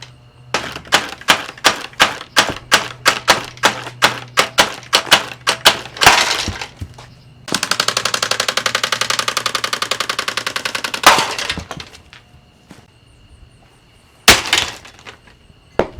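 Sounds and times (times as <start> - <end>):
box fan being smashed: 0.6 - 6.9, 10.8 - 12.0, 14.3 - 15.3.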